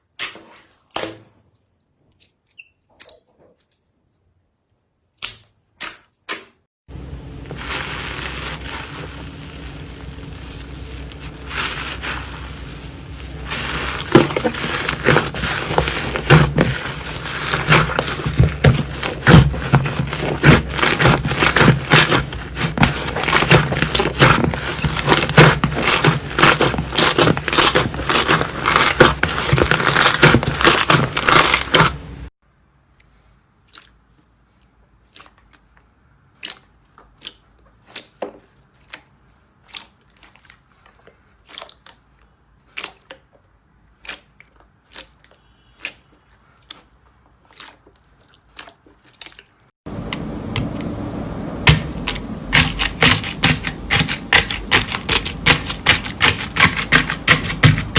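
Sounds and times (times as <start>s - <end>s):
slime squishing and crackling: 6.9s - 32.3s, 33.6s - 49.7s, 51.7s - 57.9s.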